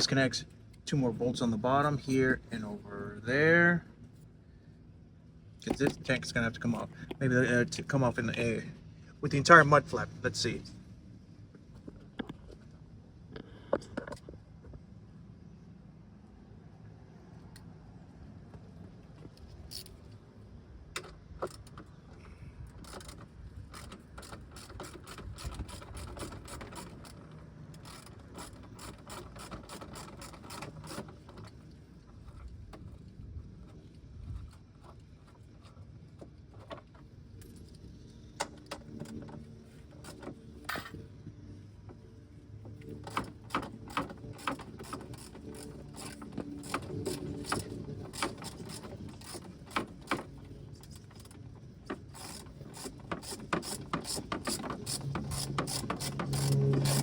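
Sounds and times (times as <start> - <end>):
ratchet wrench clicking: 19.7 - 20.0, 22.8 - 31.3, 43.0 - 51.4, 52.0 - 57.0.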